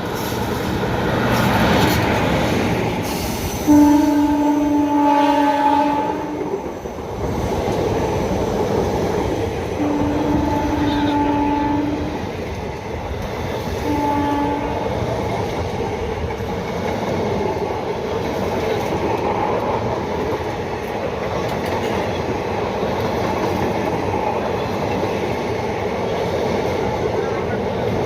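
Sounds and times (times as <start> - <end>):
train passing close by: 0.0 - 28.0
locomotive horn blast: 3.6 - 6.5, 9.8 - 12.2, 13.8 - 14.9.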